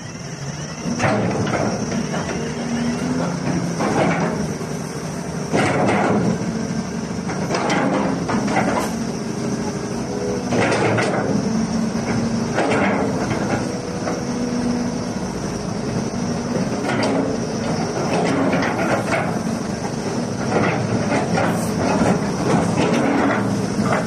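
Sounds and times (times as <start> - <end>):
excavator diesel engine running: 0.0 - 24.0
metallic clanks and knocks: 7.3 - 9.0, 10.5 - 11.4, 20.4 - 24.0.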